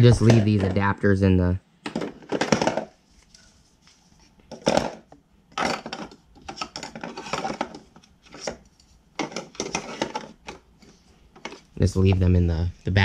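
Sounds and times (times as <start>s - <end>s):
plastic clattering and knocking: 0.0s - 0.9s, 1.8s - 3.0s, 4.5s - 10.7s, 11.4s - 12.3s.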